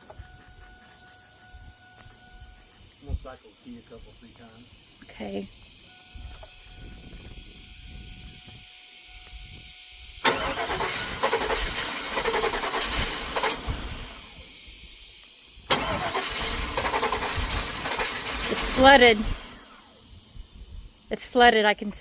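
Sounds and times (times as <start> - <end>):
car engine cranking by starter: 10.2 - 14.6, 15.7 - 20.0.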